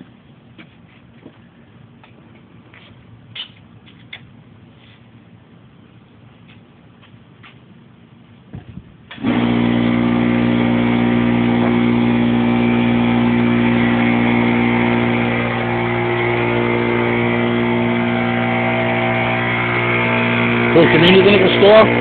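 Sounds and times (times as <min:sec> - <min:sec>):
engine starting and idling: 0:09.1 - 0:22.0.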